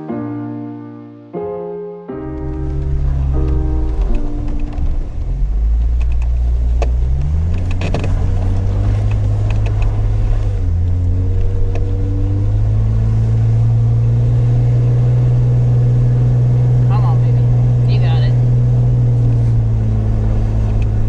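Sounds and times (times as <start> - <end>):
vehicle engine running under load: 2.4 - 21.0
sharp clicks and knocks: 5.8 - 12.0.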